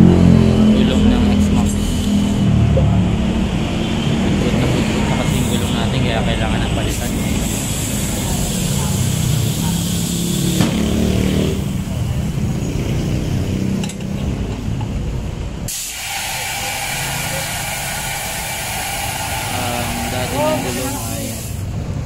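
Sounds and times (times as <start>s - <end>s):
vehicle engine running: 0.0s - 15.7s
street traffic: 0.0s - 22.0s
compressed air hissing: 1.6s - 2.5s, 6.7s - 10.9s, 15.7s - 21.8s.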